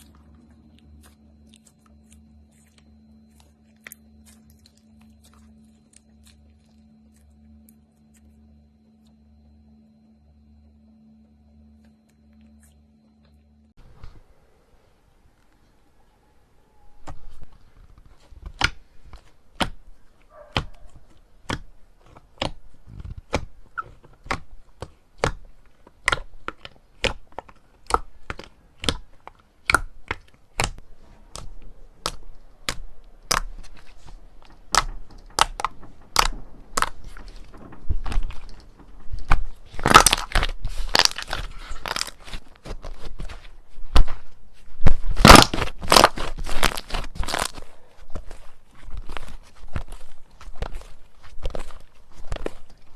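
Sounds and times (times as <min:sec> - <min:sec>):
slime crackling and crunching: 0:00.0 - 0:08.9, 0:16.9 - 0:52.9
slime clicking pops: 0:24.2 - 0:25.4, 0:29.6 - 0:33.5, 0:45.2 - 0:47.5.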